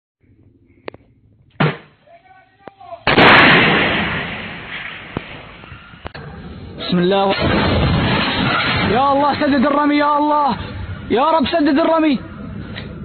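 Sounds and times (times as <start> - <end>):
gunshots: 1.6 - 2.0, 3.1 - 5.7, 7.3 - 9.5
heavy explosion boom: 3.1 - 6.7, 7.4 - 9.6.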